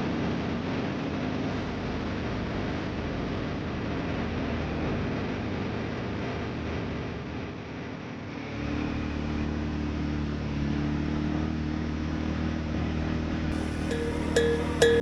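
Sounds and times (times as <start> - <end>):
music: 13.6 - 15.0
road noise: 13.6 - 15.0
short bright tones: 13.6 - 15.0.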